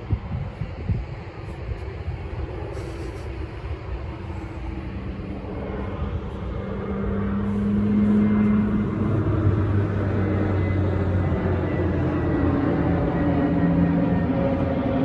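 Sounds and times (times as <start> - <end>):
traffic noise: 0.0 - 15.0
approaching vehicle engine hum: 0.1 - 15.0.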